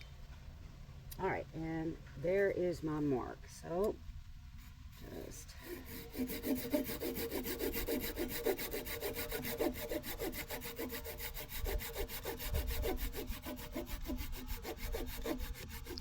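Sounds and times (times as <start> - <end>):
hand saw cutting log: 4.6 - 16.0.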